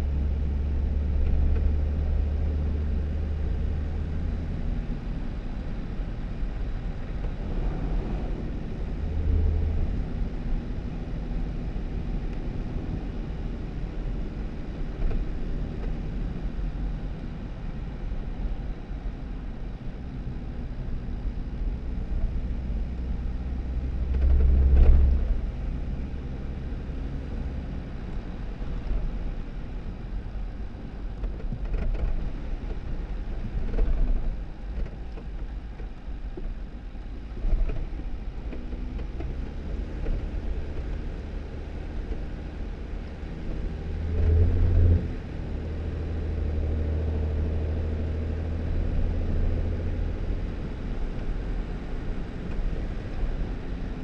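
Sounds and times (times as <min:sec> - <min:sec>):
car engine and tyres rumbling: 0:00.0 - 0:54.0.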